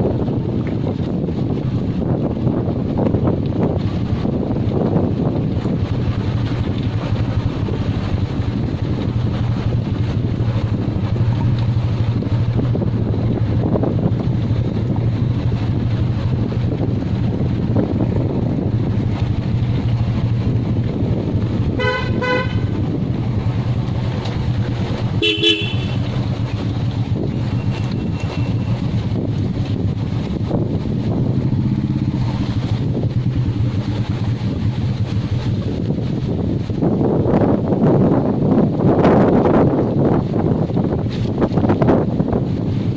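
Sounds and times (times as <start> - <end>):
motorcycle engine running: 0.0 - 42.9
vehicle horn honking: 21.8 - 22.8, 25.2 - 26.1.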